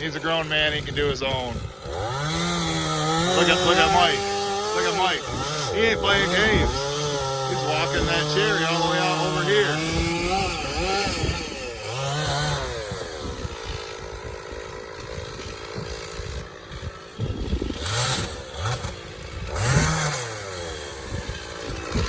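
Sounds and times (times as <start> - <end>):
chainsaw revving: 0.0 - 22.0.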